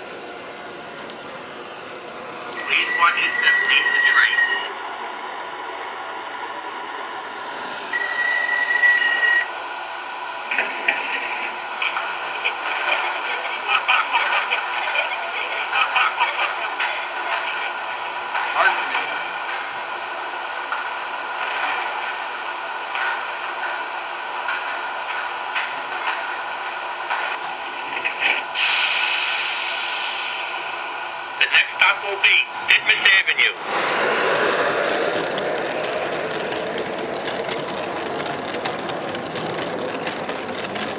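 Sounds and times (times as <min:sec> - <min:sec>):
model train clattering on track: 0:00.0 - 0:04.5, 0:22.9 - 0:23.8, 0:32.6 - 0:40.9
model train running hum: 0:00.0 - 0:40.9.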